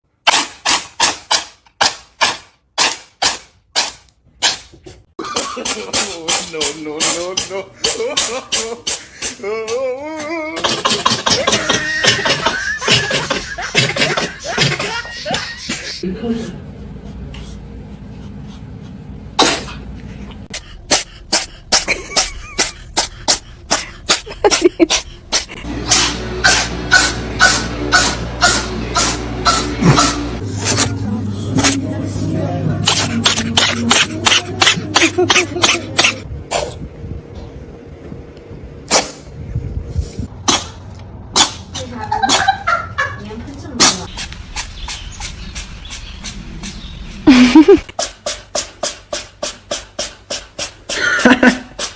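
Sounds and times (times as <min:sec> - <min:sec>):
cat sneezing: 0:19.4 - 0:19.8, 0:20.5 - 0:30.9, 0:32.8 - 0:36.8, 0:38.9 - 0:39.2.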